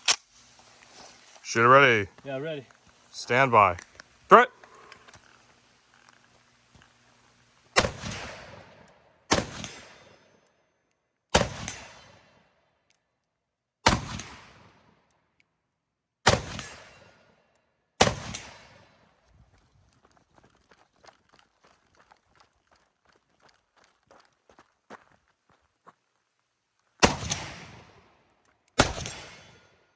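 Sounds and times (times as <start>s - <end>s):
rifle shots with echo: 7.8s - 10.3s, 11.3s - 12.4s, 13.8s - 14.9s, 16.3s - 17.3s, 18.0s - 19.1s, 27.0s - 28.1s, 28.8s - 29.9s.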